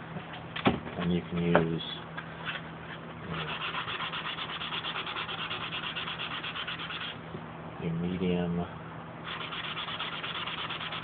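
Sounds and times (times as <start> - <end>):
sandpaper scrubbing: 3.3 - 7.2, 9.3 - 11.0.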